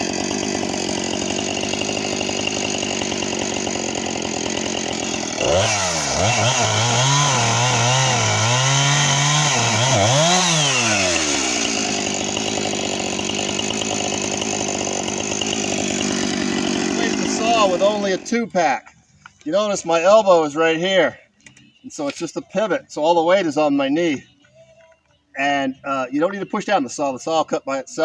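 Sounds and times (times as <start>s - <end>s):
chainsaw running at high revs: 0.0s - 18.3s.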